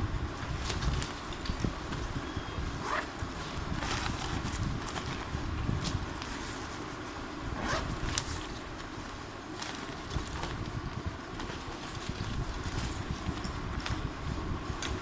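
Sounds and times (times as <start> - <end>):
fabric rustling and scraping: 0.3 - 15.0.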